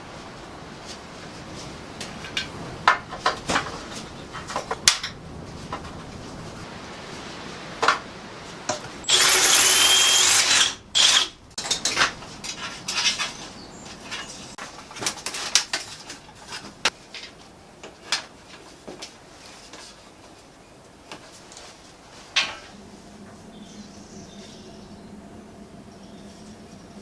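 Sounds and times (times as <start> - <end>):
power tool burst: 9.0 - 11.4.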